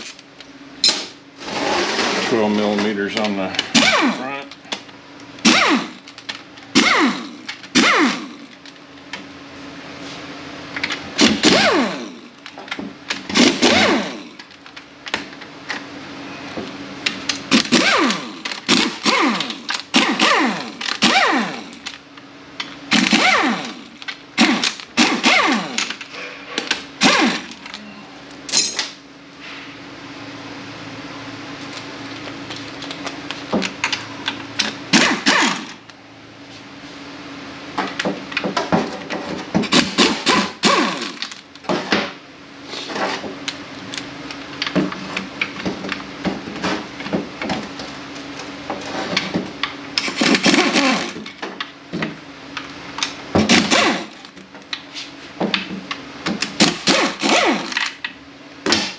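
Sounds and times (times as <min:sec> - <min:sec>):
power ratchet whirring: 0:03.6 - 0:04.5, 0:05.4 - 0:08.8, 0:10.8 - 0:14.6, 0:17.1 - 0:22.0, 0:22.6 - 0:27.8, 0:34.6 - 0:35.9, 0:39.6 - 0:41.6, 0:50.0 - 0:51.4, 0:53.4 - 0:54.4, 0:56.4 - 0:58.0.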